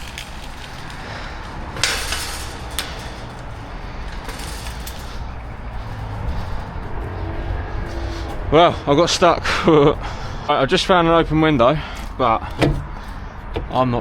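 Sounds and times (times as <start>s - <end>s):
scrapes: 0.0s - 8.8s.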